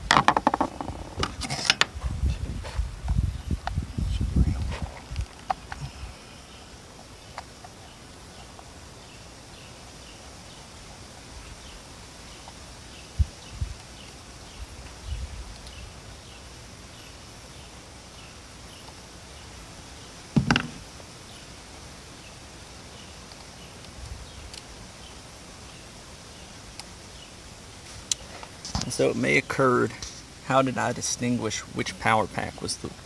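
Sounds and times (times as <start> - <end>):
dull knocks of tools: 20.4 - 20.8.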